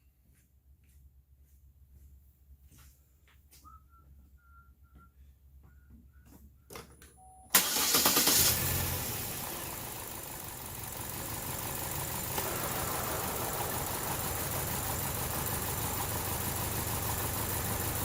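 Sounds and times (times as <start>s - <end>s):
car engine idling roughly: 7.6s - 18.0s.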